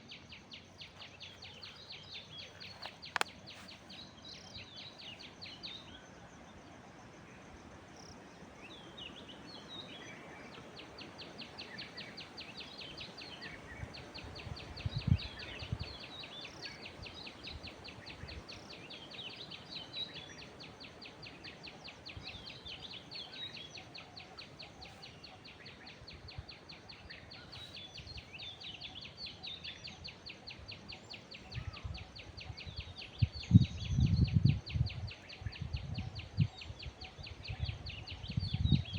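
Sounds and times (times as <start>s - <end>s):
myna bird calls: 8.8s - 33.6s.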